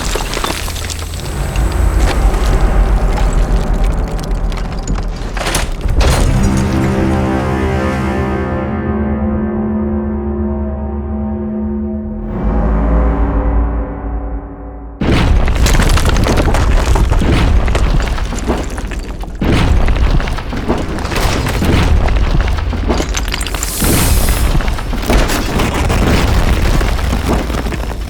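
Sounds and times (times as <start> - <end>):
crackling blast: 15.0 - 28.0.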